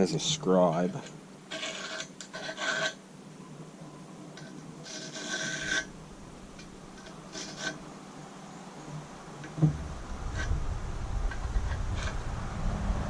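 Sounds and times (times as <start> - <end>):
metal tip scratching steel plate: 0.6 - 3.0, 4.4 - 7.9, 11.2 - 12.3.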